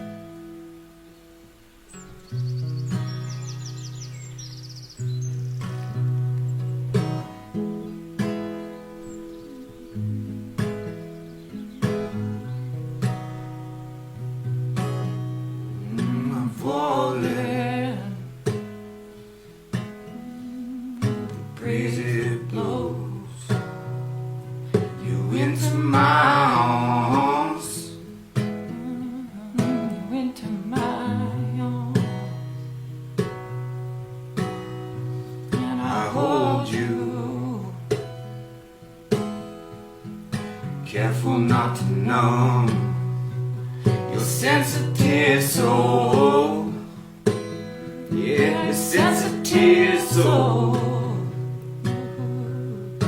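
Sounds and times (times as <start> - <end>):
acoustic guitar chords: 0.0 - 53.0
person singing: 9.4 - 10.8, 15.7 - 18.3, 20.1 - 23.6, 24.8 - 32.3, 35.5 - 38.0, 40.9 - 43.1, 43.8 - 47.0, 48.0 - 53.0.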